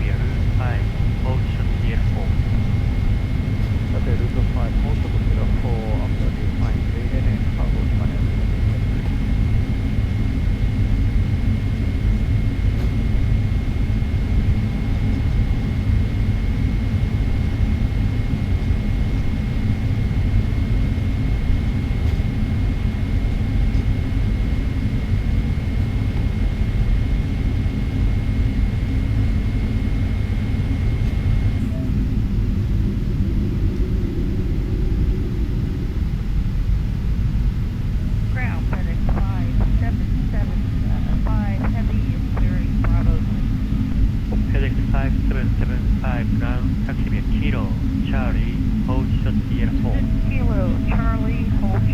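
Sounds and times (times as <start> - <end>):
aircraft cabin rumble: 0.0 - 51.9
thin high whine: 38.1 - 51.9.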